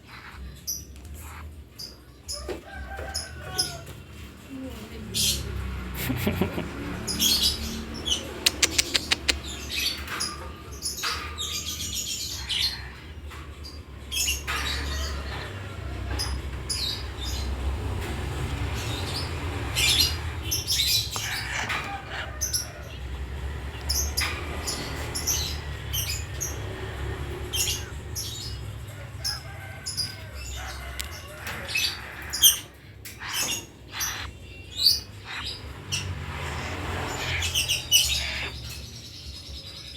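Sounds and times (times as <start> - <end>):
birds chirping and squawking: 0.0 - 39.9
sharp clicks: 8.5 - 9.5.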